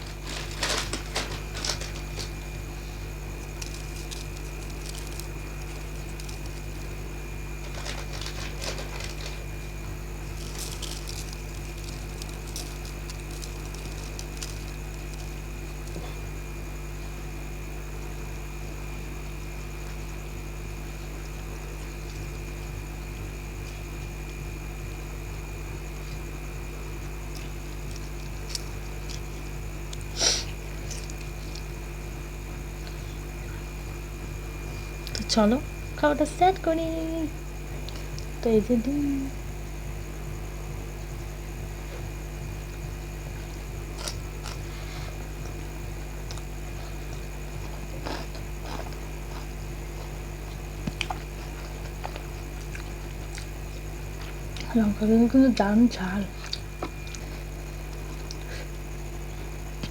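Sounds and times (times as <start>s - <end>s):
low electrical hum: 0.0s - 59.9s
mouth sounds of eating: 43.3s - 58.8s.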